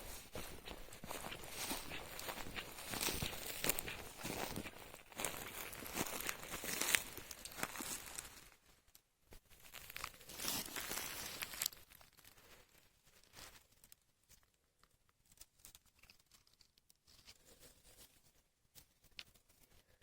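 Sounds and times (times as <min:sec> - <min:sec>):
dry plant material crackling: 0:00.0 - 0:08.6, 0:09.6 - 0:12.6.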